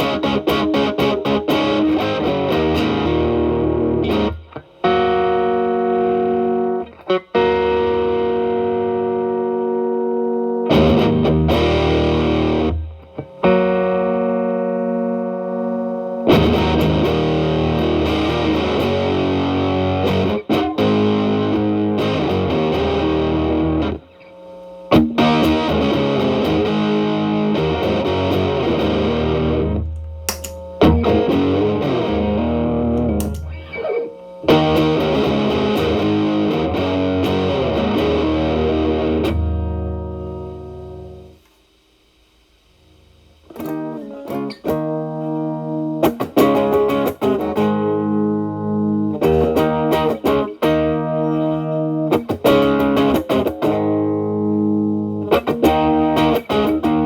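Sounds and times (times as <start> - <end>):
clean picked guitar notes: 0.0 - 24.3, 24.9 - 41.4
overdriven electric guitar chords: 0.0 - 41.5, 42.6 - 57.0.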